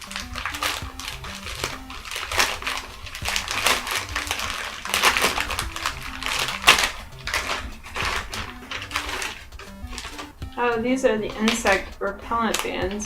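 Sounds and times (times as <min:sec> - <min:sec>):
package being torn open: 0:00.0 - 0:10.6, 0:11.3 - 0:12.7
light chiptune music: 0:00.0 - 0:13.0
packaging crinkling: 0:00.0 - 0:13.0.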